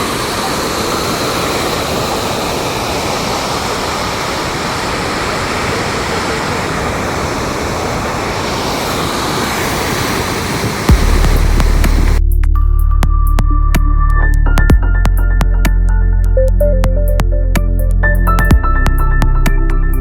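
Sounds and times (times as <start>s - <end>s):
rushing floodwater: 0.0s - 10.9s.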